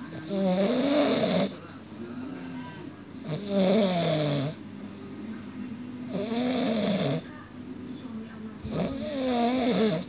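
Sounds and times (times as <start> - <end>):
person snoring: 0.3 - 1.5, 6.1 - 7.2, 8.7 - 10.0.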